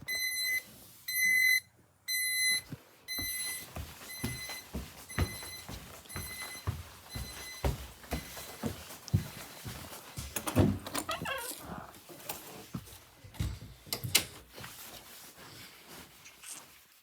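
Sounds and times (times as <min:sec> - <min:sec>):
electronic alarm beeping: 0:00.1 - 0:07.7.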